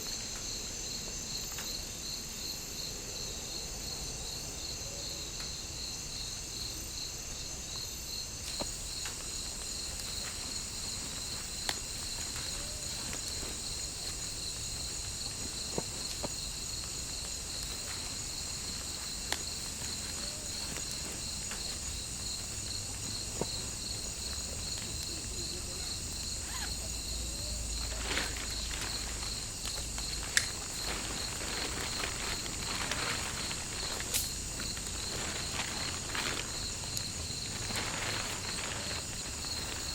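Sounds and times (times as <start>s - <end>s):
insects chirring: 0.0s - 39.9s
rustling footsteps: 8.4s - 39.9s.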